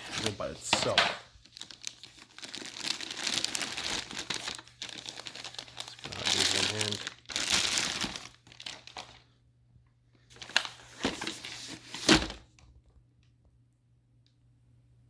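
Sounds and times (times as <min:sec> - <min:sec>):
plastic packaging rustling: 0:00.0 - 0:09.4, 0:10.3 - 0:12.6
plastic crackles: 0:00.2 - 0:09.3, 0:10.3 - 0:12.7.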